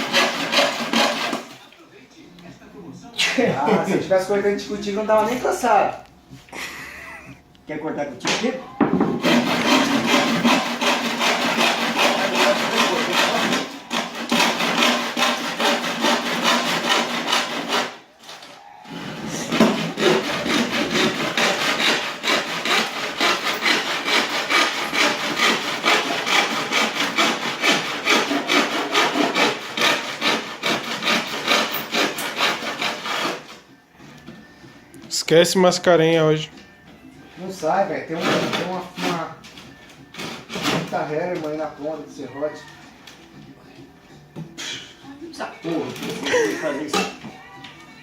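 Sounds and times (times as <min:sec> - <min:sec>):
handsaw cutting wood: 0:00.0 - 0:01.6, 0:09.2 - 0:18.1, 0:18.9 - 0:33.6, 0:38.1 - 0:39.4, 0:40.1 - 0:41.1, 0:45.7 - 0:47.0.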